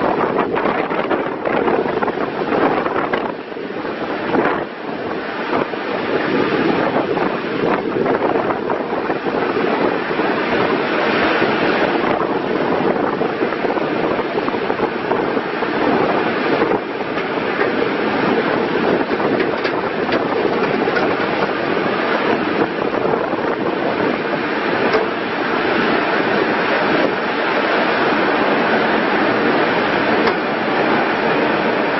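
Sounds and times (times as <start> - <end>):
backhoe loader running: 14.3 - 31.9.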